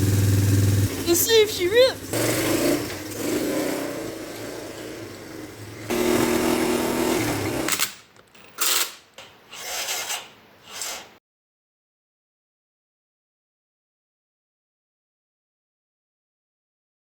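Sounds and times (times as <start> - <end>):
atv engine running: 0.0 - 7.7.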